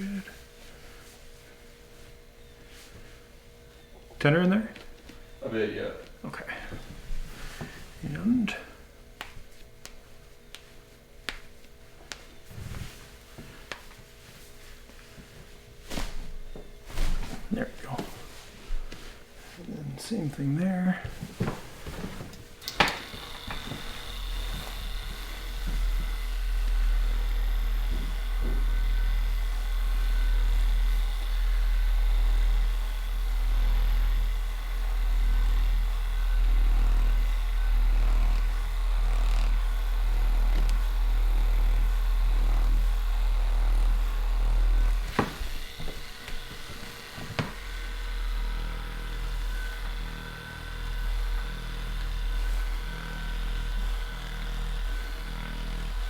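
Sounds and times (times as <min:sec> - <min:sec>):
small electric motor buzzing: 0:22.6 - 0:56.0.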